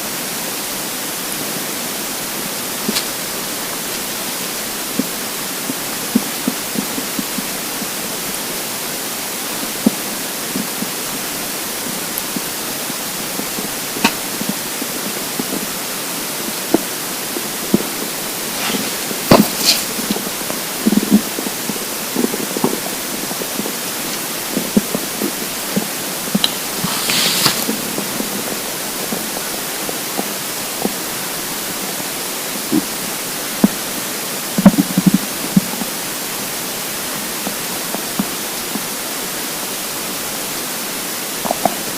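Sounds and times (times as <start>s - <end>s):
steady loud hiss: 0.0s - 41.9s
stomach gurgling: 9.5s - 31.8s, 41.4s - 41.9s.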